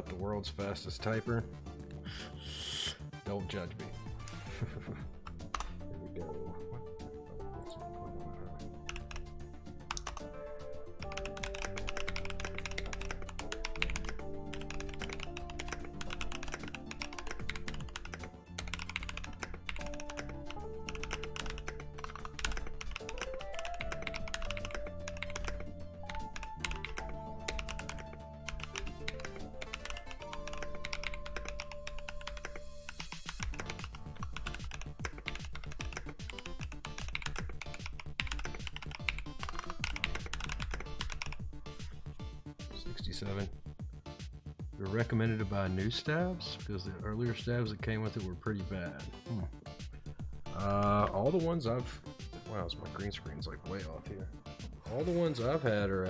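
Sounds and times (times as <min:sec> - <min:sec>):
background music: 0:00.0 - 0:56.0
fast mechanical keyboard typing: 0:08.9 - 0:09.3, 0:09.9 - 0:10.3, 0:11.0 - 0:41.5.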